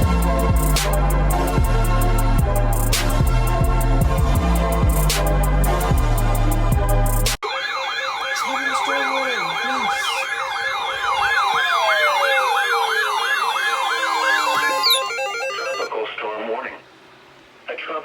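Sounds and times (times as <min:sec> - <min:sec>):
intro music with drum beat: 0:00.0 - 0:07.4
electronic siren alert tone: 0:07.4 - 0:15.9.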